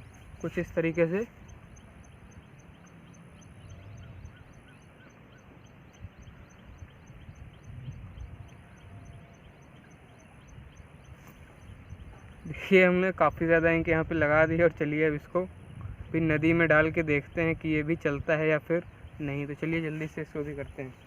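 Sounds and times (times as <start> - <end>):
high regular ticking: 0.0 - 8.0
faint outdoor background noise: 0.0 - 21.0.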